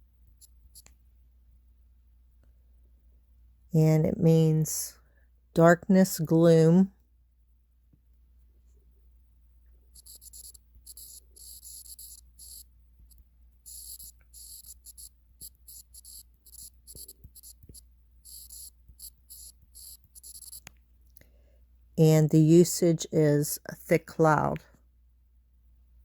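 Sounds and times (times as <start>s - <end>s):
pen scratching on paper: 10.0s - 12.6s, 13.7s - 20.6s.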